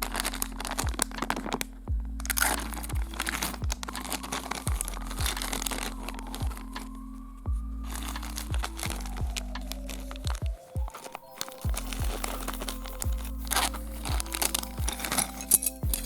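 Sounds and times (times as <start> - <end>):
crackling and crinkling noise: 0.0 - 16.0
electronic music with bass drum: 0.0 - 16.0.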